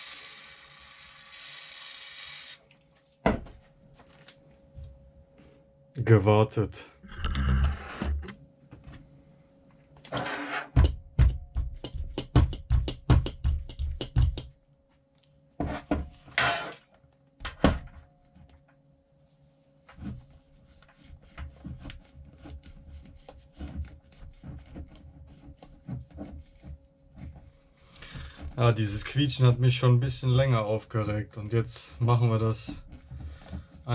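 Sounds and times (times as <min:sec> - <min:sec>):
knocks and clicks of parts: 0:10.7 - 0:14.6.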